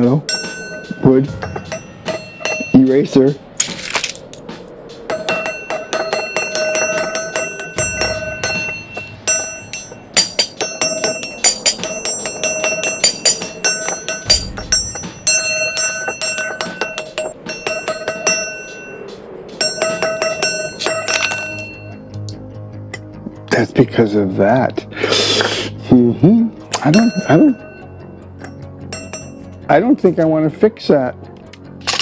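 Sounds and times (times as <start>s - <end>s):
metal struck ringing like bell: 0.0s - 3.5s, 5.1s - 22.0s, 26.7s - 29.6s.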